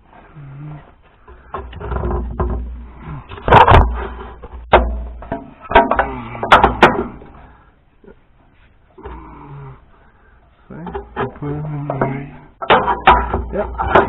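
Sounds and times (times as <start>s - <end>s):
metallic knocks and clunks: 1.2s - 7.5s, 10.7s - 14.0s.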